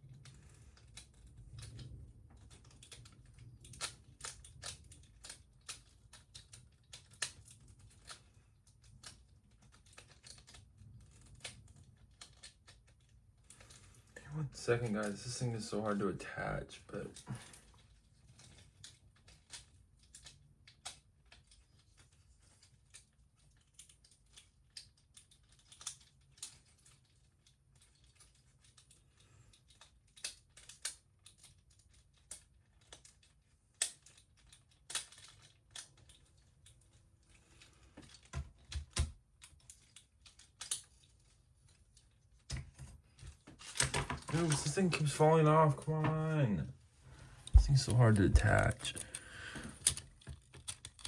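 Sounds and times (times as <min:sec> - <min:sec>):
plastic toy parts clicking: 0:00.1 - 0:13.8, 0:17.2 - 0:37.0, 0:38.0 - 0:44.7, 0:47.9 - 0:51.0.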